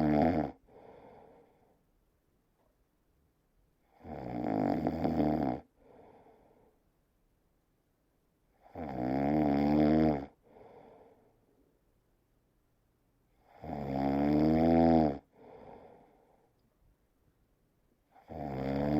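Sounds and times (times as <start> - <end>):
loud snoring: 0.0 - 0.6, 3.9 - 5.7, 8.6 - 10.4, 13.4 - 15.3, 18.1 - 18.9
breathy breath out: 0.6 - 1.8, 5.8 - 6.8, 10.4 - 11.4, 15.3 - 16.5.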